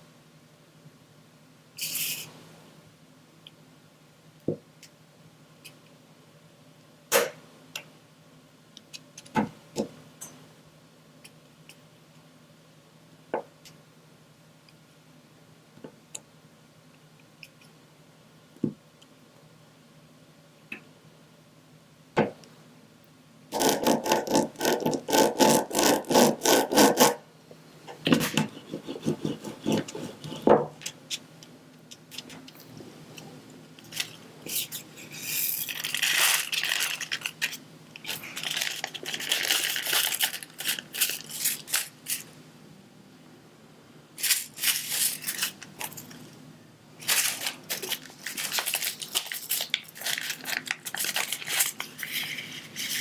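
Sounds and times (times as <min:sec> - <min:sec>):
scraping and rustling: 0:33.8 - 0:42.3, 0:44.2 - 0:46.3, 0:47.0 - 0:53.0.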